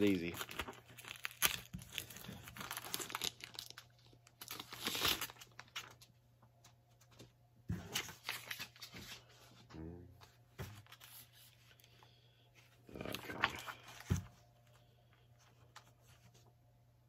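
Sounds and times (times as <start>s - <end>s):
plastic bag crinkling: 0.0s - 6.1s.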